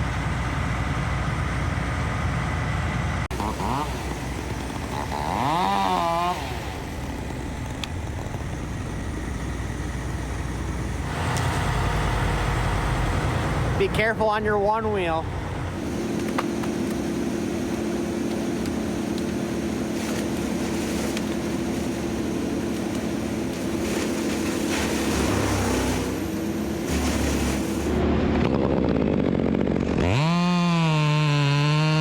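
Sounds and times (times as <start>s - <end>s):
engine running at low speed: 0.0s - 32.0s
chainsaw revving: 3.3s - 8.7s, 23.6s - 32.0s.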